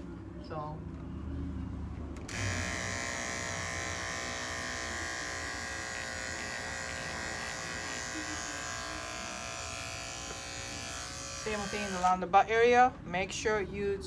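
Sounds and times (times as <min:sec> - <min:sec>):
electric clipper buzzing: 0:02.3 - 0:12.2.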